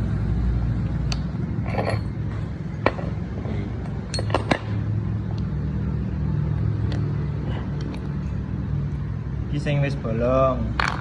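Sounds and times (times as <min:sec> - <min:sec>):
steady low hum: 0:00.0 - 0:11.0
metal parts clinking: 0:01.6 - 0:03.1, 0:04.1 - 0:04.6.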